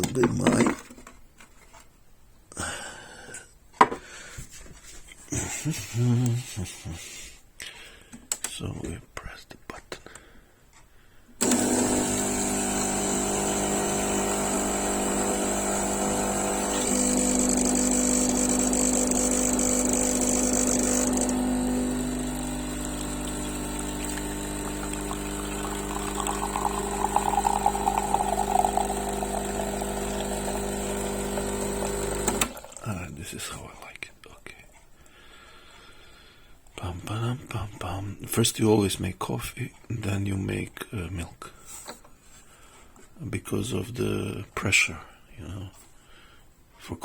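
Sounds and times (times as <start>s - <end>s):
espresso machine pump running: 11.4s - 32.8s.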